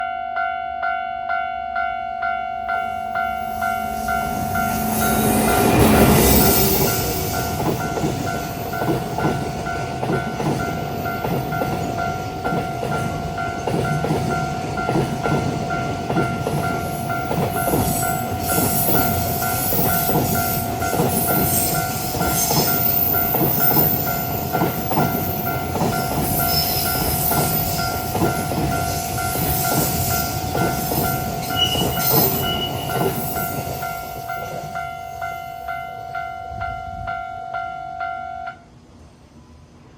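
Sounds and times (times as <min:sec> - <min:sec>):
level crossing bell ringing: 0:01.0 - 0:08.7
electric locomotive passing: 0:02.3 - 0:39.9.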